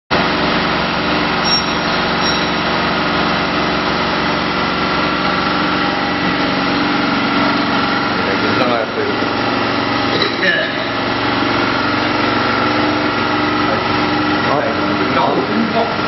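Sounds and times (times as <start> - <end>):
forging machine motor hum: 0.2 - 16.0.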